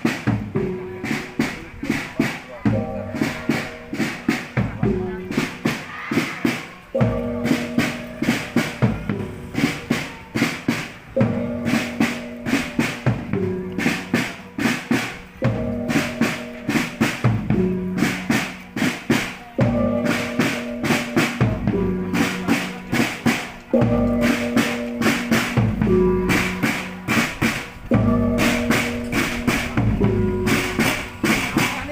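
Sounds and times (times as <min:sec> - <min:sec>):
quick drum strokes: 0:00.0 - 0:31.9
melodic phrase of held notes: 0:06.9 - 0:31.9.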